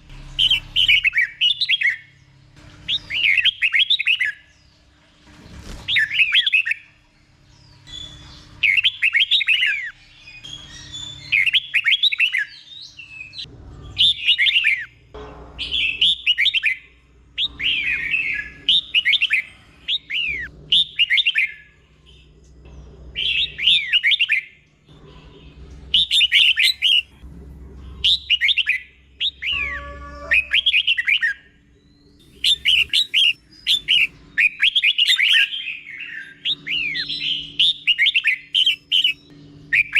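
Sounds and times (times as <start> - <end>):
bird singing whistled phrases: 28.1 - 31.5.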